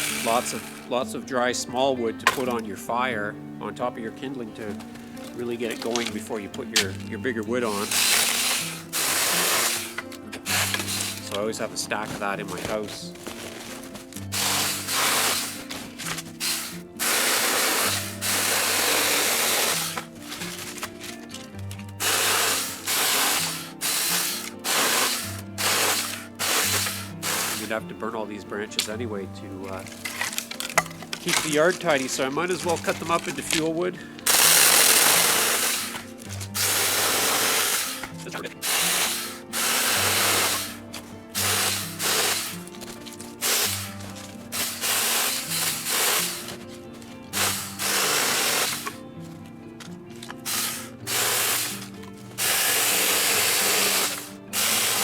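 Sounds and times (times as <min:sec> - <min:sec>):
mini chainsaw cutting branches: 0:00.0 - 0:01.0, 0:02.3 - 0:02.6, 0:04.6 - 0:27.8, 0:29.8 - 0:49.1, 0:50.1 - 0:55.0
background music: 0:00.0 - 0:55.0.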